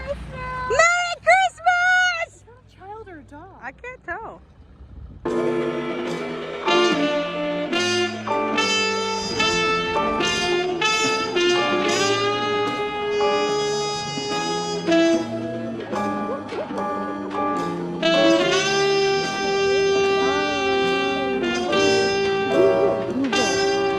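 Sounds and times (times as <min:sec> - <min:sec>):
instrumental music: 0:05.3 - 0:23.9.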